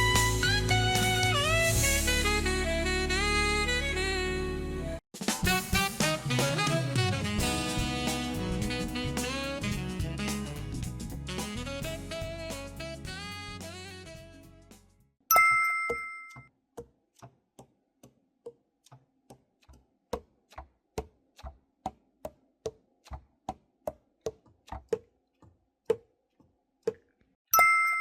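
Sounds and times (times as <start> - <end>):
background music: 0.0 - 14.9
bright two-tone chime: 15.3 - 16.5, 27.6 - 28.0.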